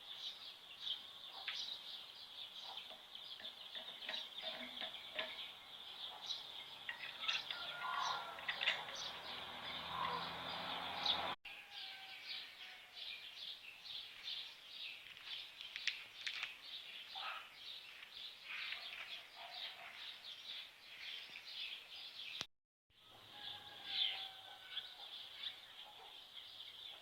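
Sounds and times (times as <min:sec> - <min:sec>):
birds chirping: 0:00.0 - 0:27.0.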